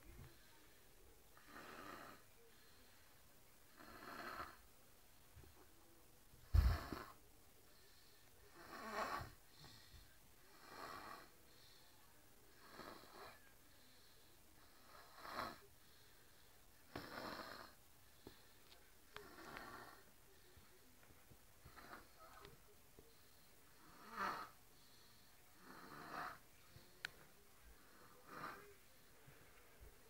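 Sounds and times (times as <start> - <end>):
person snoring: 8.5 - 9.3, 23.8 - 24.6.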